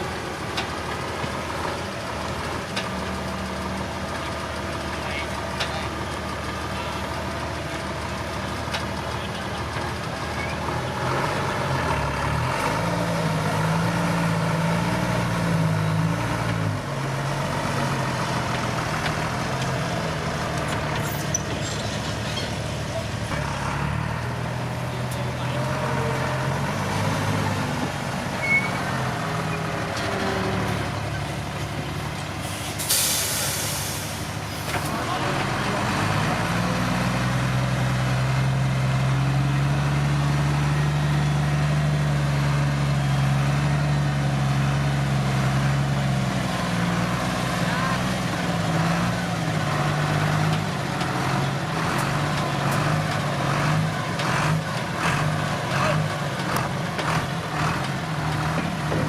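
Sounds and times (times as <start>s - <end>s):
diesel truck engine running: 0.0s - 59.0s
air brakes hiss: 32.4s - 34.6s.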